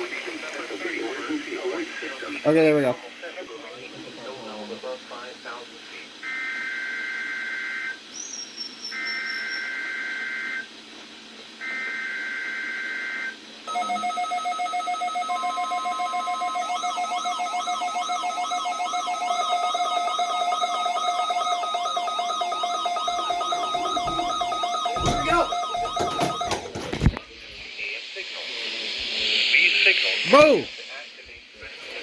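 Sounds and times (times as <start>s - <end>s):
fast-pulsing alarm beep: 8.9s - 10.7s, 11.8s - 26.9s
siren-like sweeping tone: 13.7s - 26.6s
two-tone digital data warble: 13.7s - 27.1s.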